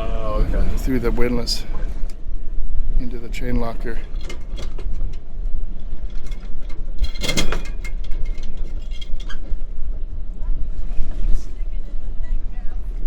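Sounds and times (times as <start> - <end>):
steady low rumble: 0.0 - 13.0
anchor chain clattering: 3.3 - 10.1.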